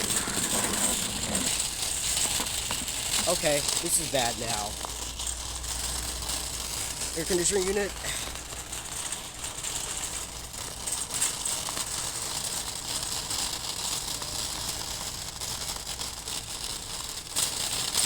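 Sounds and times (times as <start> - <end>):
air conditioner humming and hissing: 0.0 - 18.0
crackling rustle: 0.0 - 18.0.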